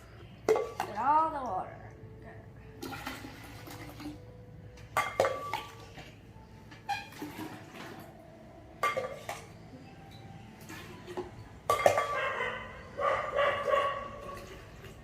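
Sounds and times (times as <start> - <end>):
water filling plastic container: 2.8 - 4.2, 7.0 - 8.2.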